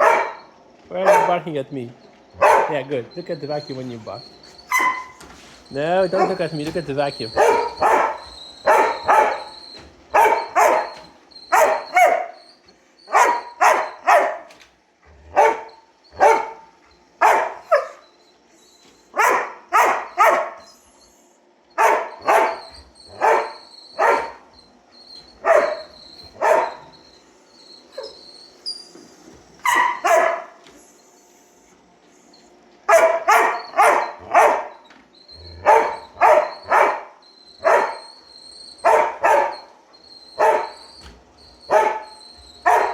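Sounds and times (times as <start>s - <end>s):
dog barking: 0.0s - 1.4s, 2.4s - 2.9s, 4.6s - 5.2s, 6.0s - 6.6s, 7.2s - 12.5s, 13.1s - 14.6s, 15.3s - 18.0s, 19.1s - 20.7s, 21.8s - 24.5s, 25.4s - 27.0s, 29.6s - 30.6s, 32.9s - 34.8s, 35.6s - 38.2s, 38.8s - 41.0s, 41.6s - 42.9s
robot vacuum whine: 0.0s - 42.9s.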